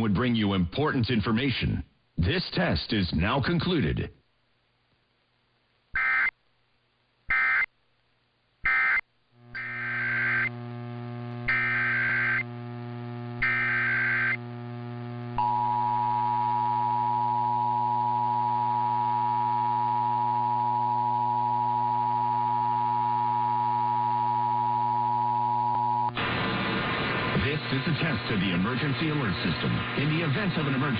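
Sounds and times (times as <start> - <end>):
low hum: 9.4 - 28.8
digital data bursts: 9.6 - 10.5, 11.5 - 12.5, 13.4 - 14.4.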